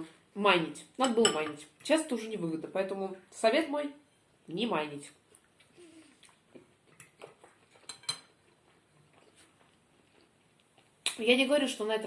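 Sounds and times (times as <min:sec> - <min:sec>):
cutlery clinking on plate: 0:07.8 - 0:08.4.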